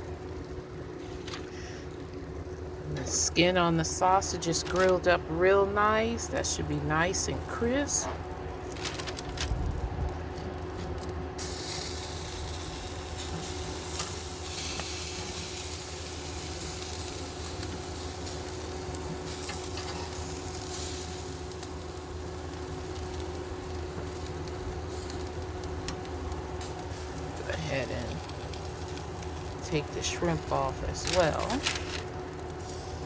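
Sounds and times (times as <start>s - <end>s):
food sizzling on a grill: 10.1s - 33.0s.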